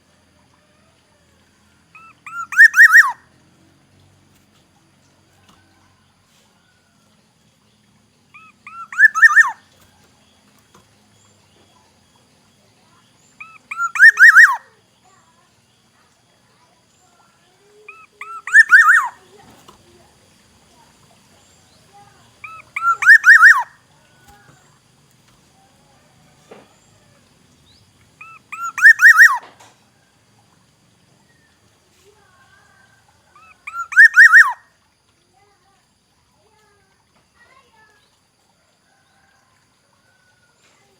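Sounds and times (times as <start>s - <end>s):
bird singing fluty whistles: 1.9s - 3.2s, 8.4s - 9.6s, 13.4s - 14.7s, 18.2s - 19.2s, 22.4s - 24.5s, 27.7s - 29.5s, 33.4s - 34.6s.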